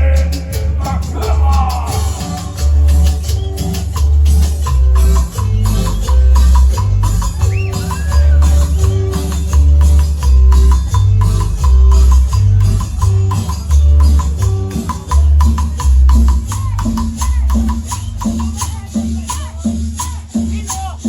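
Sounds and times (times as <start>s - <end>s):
music with heavy bass and beat: 0.0s - 21.0s.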